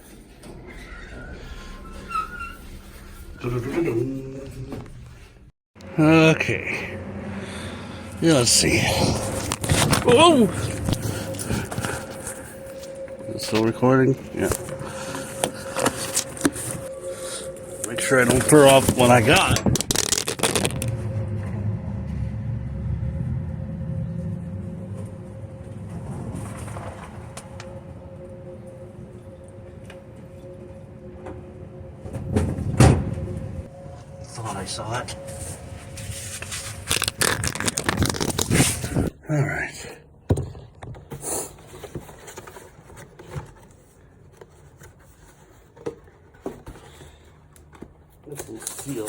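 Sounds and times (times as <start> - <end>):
low steady rumble: 0.0 - 39.2
packaging rubbing and scraping: 9.0 - 12.7, 14.4 - 21.0, 36.0 - 39.1
packaging rustle: 18.0 - 21.0, 36.6 - 39.1.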